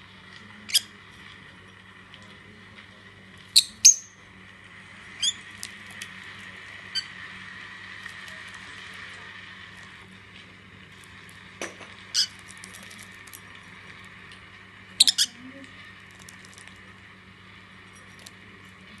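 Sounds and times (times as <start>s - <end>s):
birds chirping shrilly: 15.0s - 15.4s.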